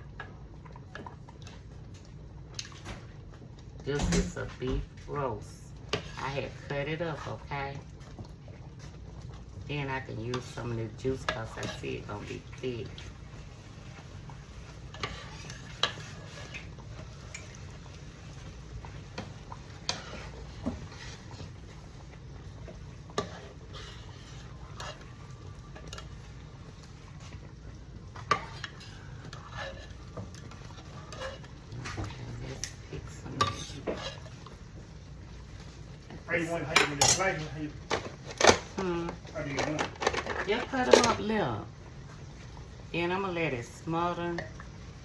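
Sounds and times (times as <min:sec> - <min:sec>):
utensils clinking against cookware: 0:28.2 - 0:34.3, 0:36.5 - 0:41.5.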